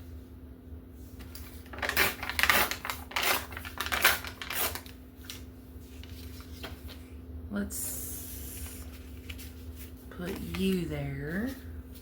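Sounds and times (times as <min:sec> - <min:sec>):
paper tearing: 0:01.4 - 0:05.4.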